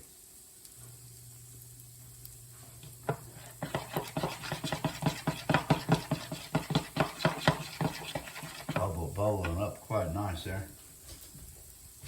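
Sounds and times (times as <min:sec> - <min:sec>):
utensil scraping cookware: 0:03.1 - 0:09.6.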